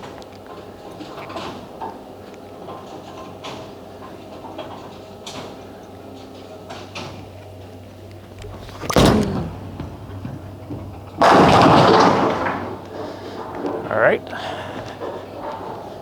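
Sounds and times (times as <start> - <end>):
low machinery hum: 4.4 - 16.0
bowling pin clatter and knocks: 8.3 - 13.9.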